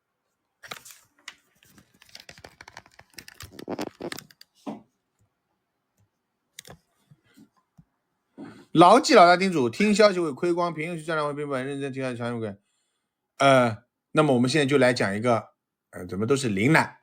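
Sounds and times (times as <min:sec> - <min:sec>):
computer keyboard typing: 0:01.7 - 0:04.6.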